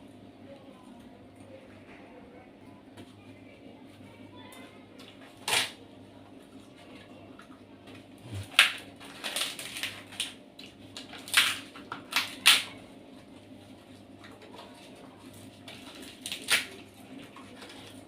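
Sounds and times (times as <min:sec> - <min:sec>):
low steady hum: 0:00.0 - 0:18.0
crunchy fried food chewing: 0:08.2 - 0:12.6.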